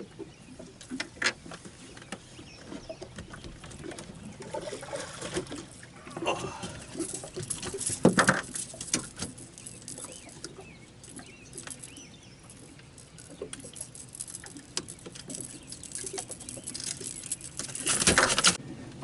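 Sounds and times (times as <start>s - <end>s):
bird chirping: 9.4s - 17.9s.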